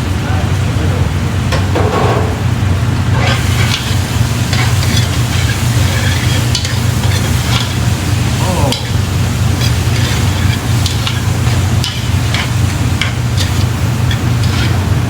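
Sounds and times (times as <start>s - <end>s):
steady low hum: 0.0s - 15.0s
onions and tomato sizzling in oil: 2.7s - 15.0s
spoon stirring and scraping pan: 3.2s - 15.0s.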